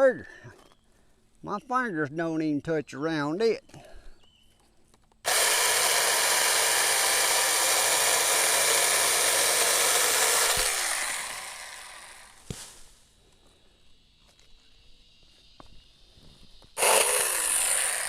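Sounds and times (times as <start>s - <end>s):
cordless chainsaw cutting limb: 5.3s - 12.7s, 16.8s - 18.0s.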